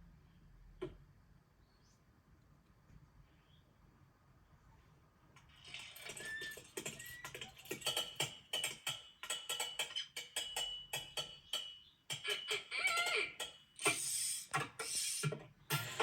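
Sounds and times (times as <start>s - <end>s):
mechanical clicking and rattling: 5.4s - 15.0s.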